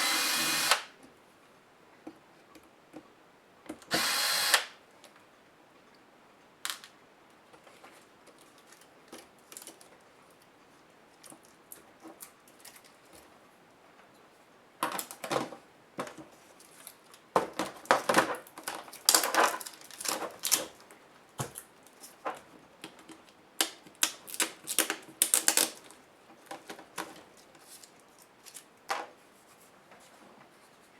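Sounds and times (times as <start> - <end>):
plastic parts clicking and snapping: 16.8 - 20.8, 22.3 - 27.2.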